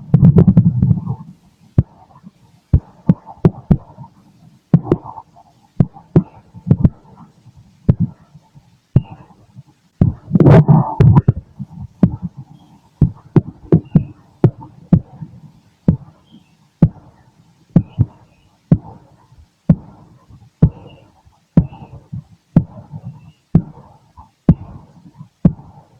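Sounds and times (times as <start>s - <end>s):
heartbeat through stethoscope: 0.0s - 25.9s.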